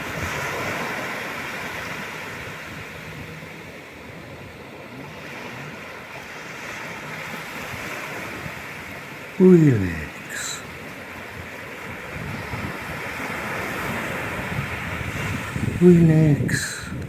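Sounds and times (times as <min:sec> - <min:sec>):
surf washing in: 0:00.0 - 0:17.0
wind on microphone: 0:11.8 - 0:17.0.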